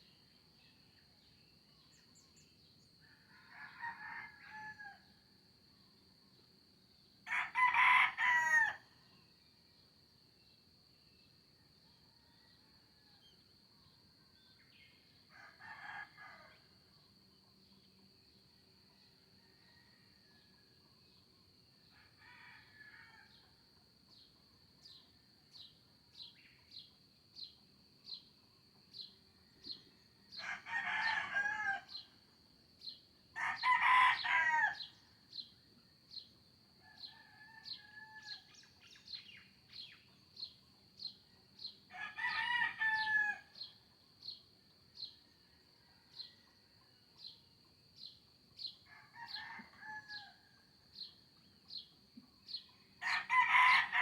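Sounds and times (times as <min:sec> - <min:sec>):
distant roosters crowing: 0:03.2 - 0:05.1, 0:07.3 - 0:08.9, 0:15.3 - 0:16.6, 0:30.2 - 0:32.1, 0:33.4 - 0:35.0, 0:41.9 - 0:43.6, 0:53.0 - 0:54.0
rooster crowing: 0:03.3 - 0:05.0, 0:07.3 - 0:08.8, 0:15.3 - 0:16.6, 0:30.3 - 0:32.0, 0:33.4 - 0:34.9, 0:36.8 - 0:38.5, 0:41.9 - 0:43.5, 0:48.9 - 0:50.4, 0:53.0 - 0:54.0.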